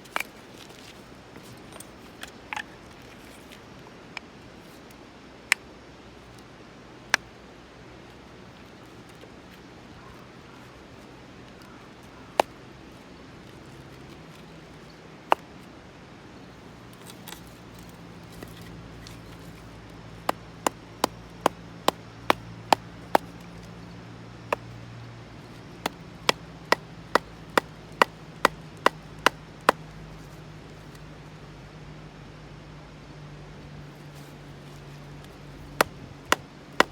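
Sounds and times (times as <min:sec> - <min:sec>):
knocks striking wood: 0:20.3 - 0:23.4, 0:25.8 - 0:29.8, 0:35.7 - 0:36.9.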